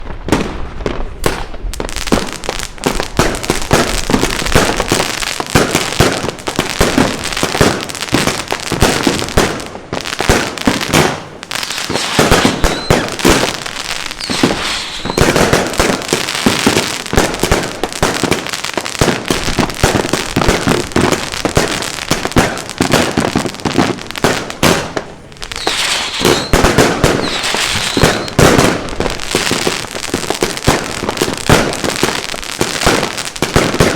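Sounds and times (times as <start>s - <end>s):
firework cake firing shots: 1.2s - 2.3s, 10.2s - 18.4s, 19.0s - 32.2s.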